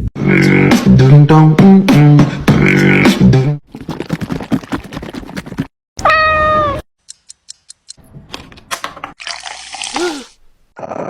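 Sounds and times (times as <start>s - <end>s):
cat meowing loudly: 6.0s - 6.8s.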